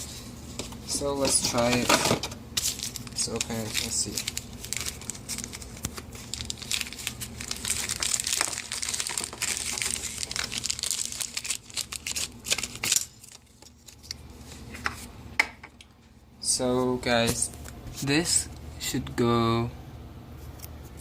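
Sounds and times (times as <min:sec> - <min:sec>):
packaging crinkling: 0:02.6 - 0:14.3.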